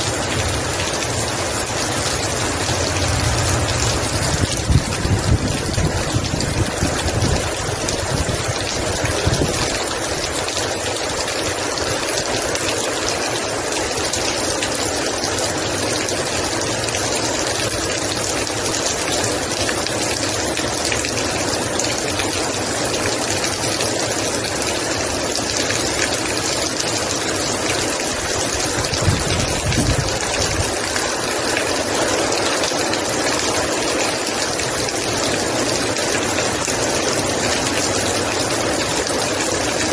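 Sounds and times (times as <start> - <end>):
heavy rain pouring: 0.0 - 39.9
low rumbles: 0.2 - 7.5.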